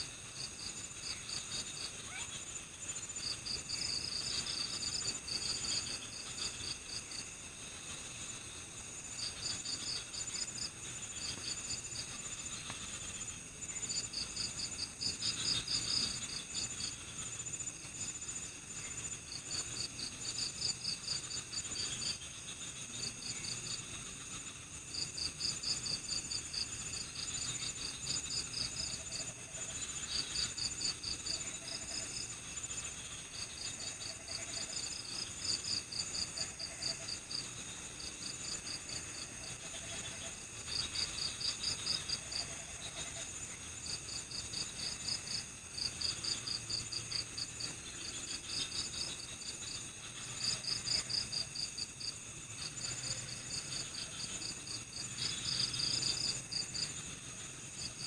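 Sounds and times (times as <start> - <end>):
crickets chirping: 0.0 - 58.0
shrill insect trill: 0.4 - 58.0.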